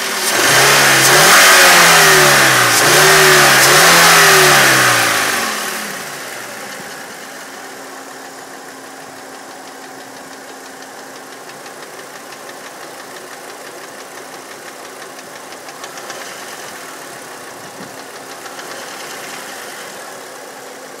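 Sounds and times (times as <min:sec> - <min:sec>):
car engine idling with light ticking: 0:04.8 - 0:21.0.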